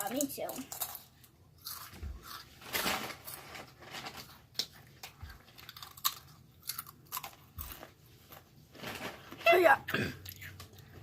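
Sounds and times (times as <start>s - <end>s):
crunching and chewing: 0.1s - 8.6s, 9.9s - 11.0s
rustling: 2.4s - 5.4s, 7.6s - 9.8s.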